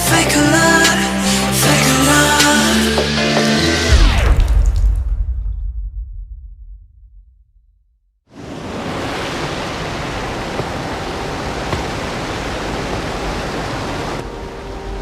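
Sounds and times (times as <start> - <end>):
steady rushing static noise: 8.4 - 15.0.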